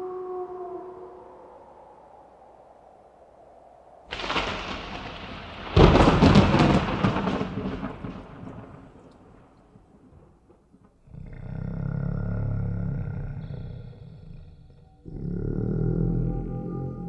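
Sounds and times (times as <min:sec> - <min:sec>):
thunder crack and rumble: 0:04.1 - 0:15.1.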